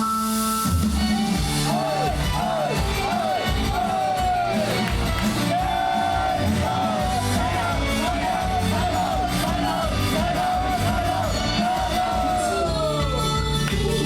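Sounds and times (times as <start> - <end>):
pop backing track with bass beat: 0.0 - 14.0
woman singing: 11.6 - 14.0.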